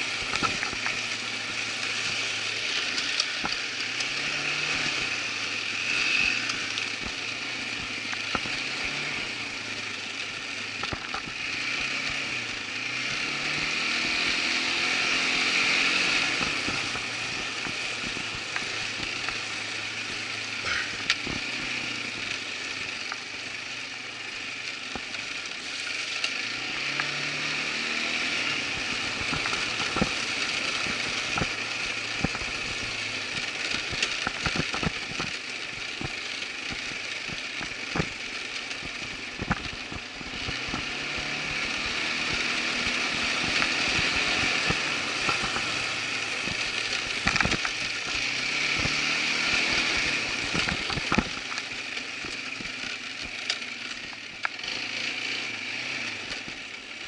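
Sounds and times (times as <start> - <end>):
quad bike engine running: 0.0 - 57.0
knocks and rattles over bumps: 28.1 - 54.7.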